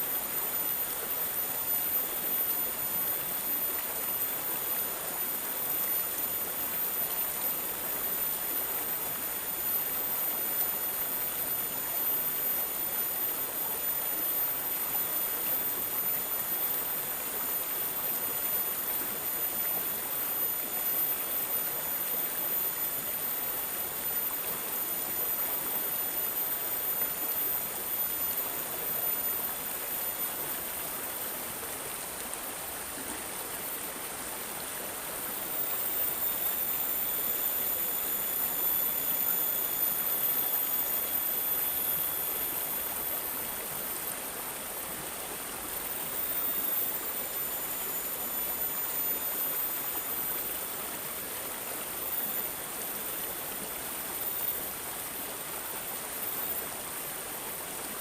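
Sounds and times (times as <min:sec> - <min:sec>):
faint high steady tone: 0:00.0 - 0:58.0.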